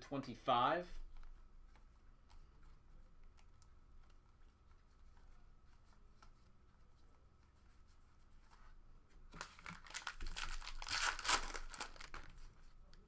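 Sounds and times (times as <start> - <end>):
faint high hum: 0.0 - 13.0.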